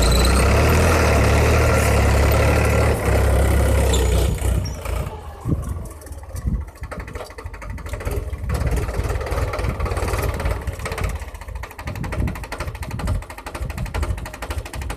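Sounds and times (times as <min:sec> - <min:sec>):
tractor diesel engine running: 0:00.0 - 0:14.9.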